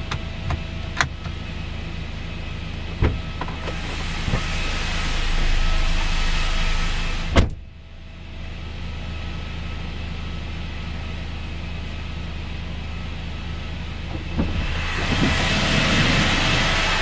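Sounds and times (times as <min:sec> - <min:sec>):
car engine idling: 0:00.0 - 0:17.0
rising hiss: 0:14.6 - 0:17.0.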